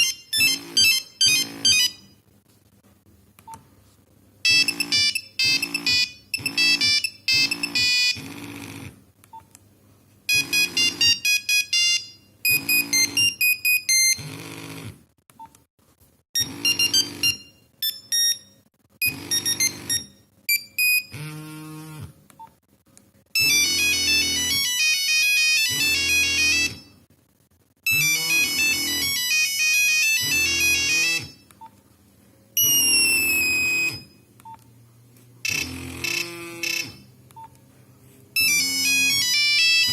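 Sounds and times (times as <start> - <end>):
mobile phone beeping ringtones: 0.0 - 2.2, 4.4 - 8.8, 10.3 - 14.8, 16.4 - 21.5, 23.4 - 27.0, 27.9 - 31.5, 32.6 - 34.2, 35.4 - 37.5, 38.4 - 39.9.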